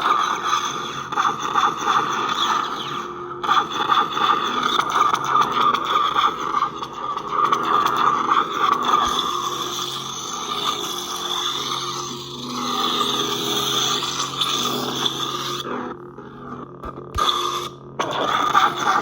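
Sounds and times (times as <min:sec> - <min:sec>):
lightsaber electric hum: 0:04.3 - 0:19.0.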